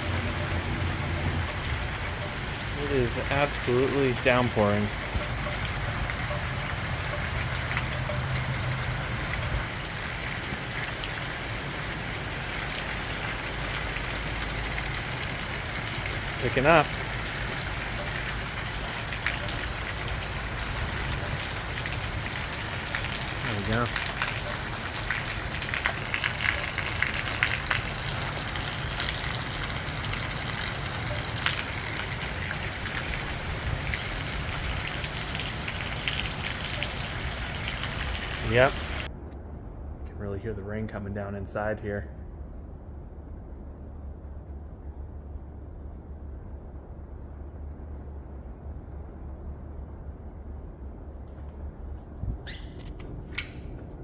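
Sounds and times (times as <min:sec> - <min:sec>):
heavy rain: 0:00.0 - 0:39.1.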